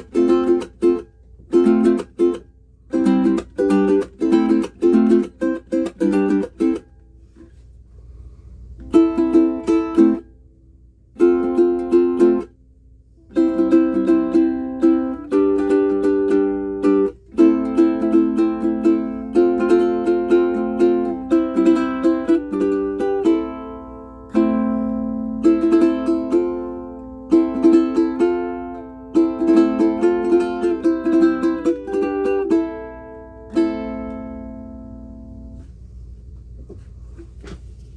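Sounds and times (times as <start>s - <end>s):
ukulele chords strummed: 0.0s - 7.4s, 8.8s - 12.6s, 13.2s - 35.8s.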